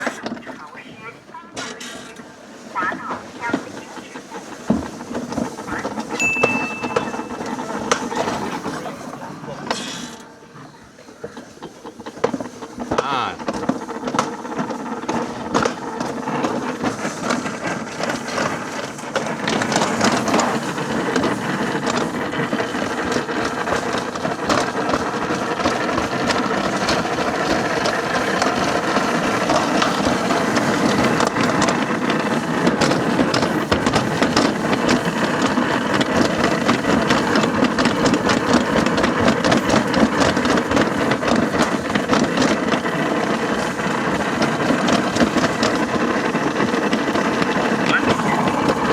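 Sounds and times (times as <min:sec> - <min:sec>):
sled rolling on metal track: 0:00.0 - 0:48.9
rapid rattling clicks: 0:12.0 - 0:48.9.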